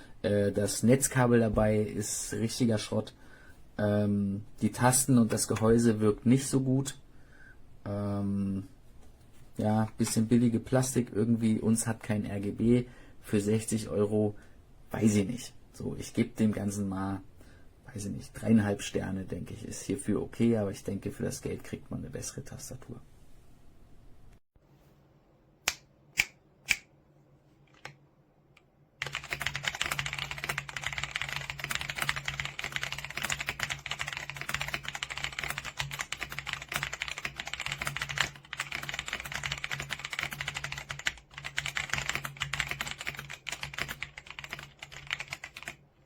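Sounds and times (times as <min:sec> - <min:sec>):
mechanical keyboard typing: 0:29.0 - 0:45.8.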